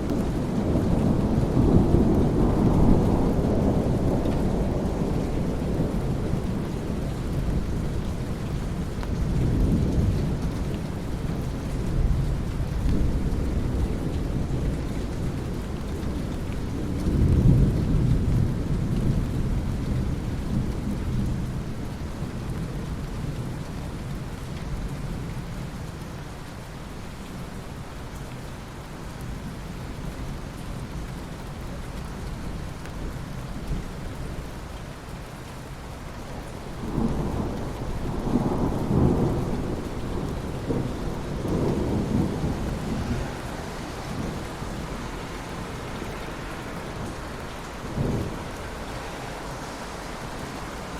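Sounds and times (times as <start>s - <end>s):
rolling thunder: 0.0s - 10.6s, 36.6s - 50.8s
steady rain: 0.0s - 50.9s.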